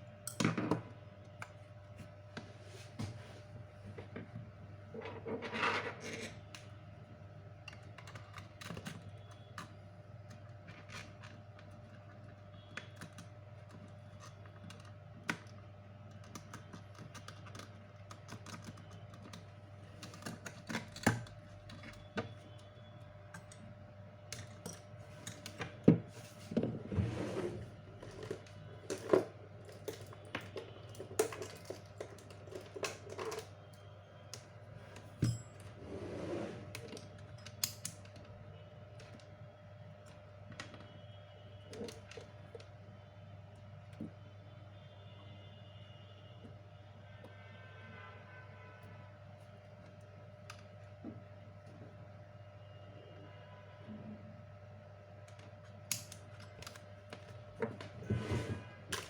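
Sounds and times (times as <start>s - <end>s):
low electrical hum: 0.0s - 59.0s
small tools clicking and tapping: 7.6s - 22.7s, 28.1s - 35.6s, 36.9s - 38.3s.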